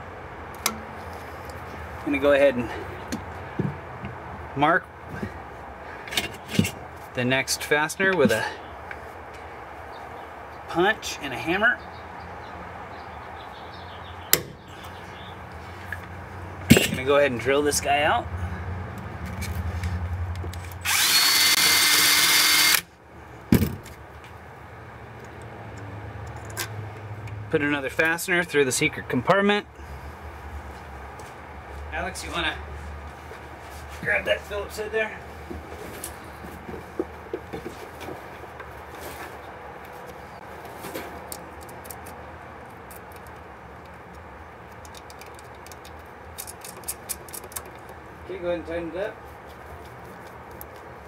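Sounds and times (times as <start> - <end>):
sharp knock: 14.3 - 14.6
power drill boring through metal: 20.8 - 22.9
screwdriver and fastener clicks: 42.8 - 48.0.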